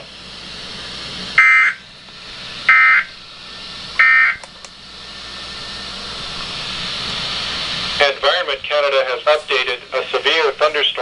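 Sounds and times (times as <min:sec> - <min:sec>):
broadcast hiss: 0:07.0 - 0:11.0.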